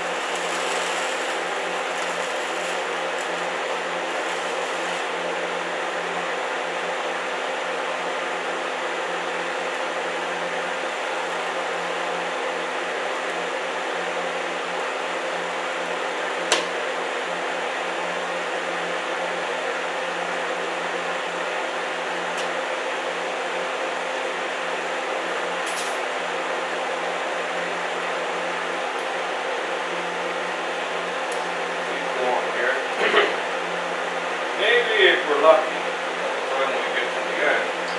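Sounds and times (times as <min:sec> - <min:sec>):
arc welding sizzle: 0:00.0 - 0:05.2, 0:09.5 - 0:12.4.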